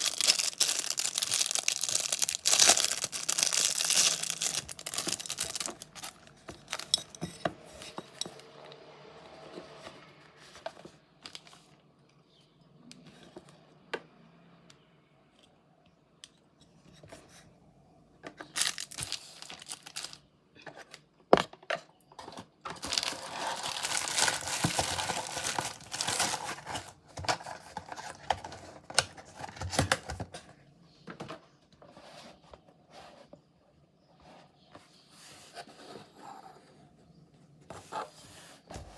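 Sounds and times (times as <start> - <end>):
packaging tearing and crinkling: 0.0 - 7.1, 18.6 - 20.2, 22.7 - 30.2.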